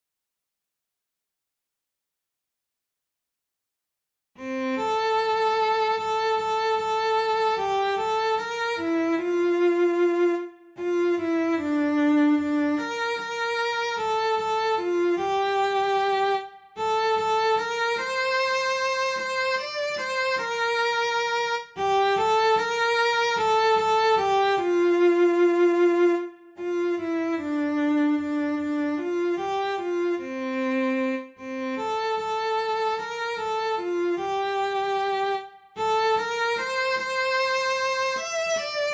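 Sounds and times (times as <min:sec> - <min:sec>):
cello playing slow melody: 0:04.4 - 0:38.9.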